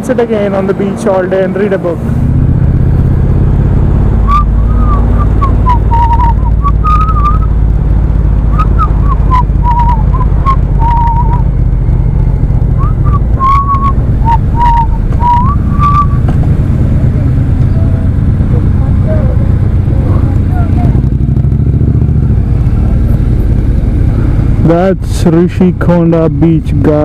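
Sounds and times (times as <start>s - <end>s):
motorcycle rumbling: 0.0s - 27.0s
person whistling a tune: 4.3s - 7.5s, 8.6s - 11.4s, 12.8s - 16.2s.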